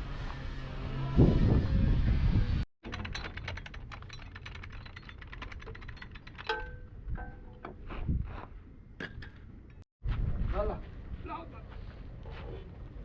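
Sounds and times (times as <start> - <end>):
rapid metallic clicks: 2.8 - 6.8
sharp metal knocks: 2.8 - 7.8.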